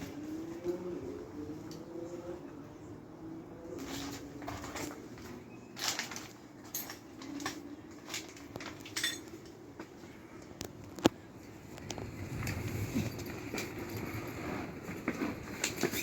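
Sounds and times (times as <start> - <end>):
hard objects clinking and knocking: 5.8 - 9.4.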